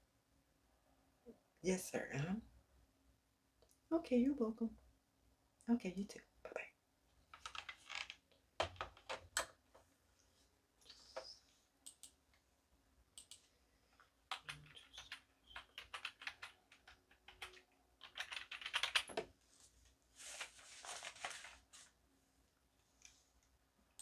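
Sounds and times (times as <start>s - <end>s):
computer keyboard typing: 7.3s - 9.6s, 14.3s - 19.3s.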